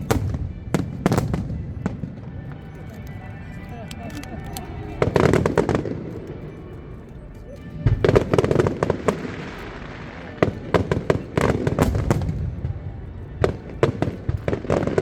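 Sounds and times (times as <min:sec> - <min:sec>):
fireworks bangs: 0:00.0 - 0:02.9, 0:07.8 - 0:15.0
fireworks crackling: 0:00.0 - 0:15.0.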